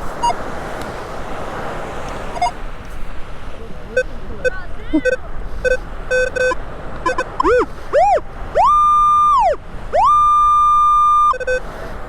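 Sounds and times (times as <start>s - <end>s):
metal detector tones: 2.3s - 2.6s, 4.0s - 11.6s.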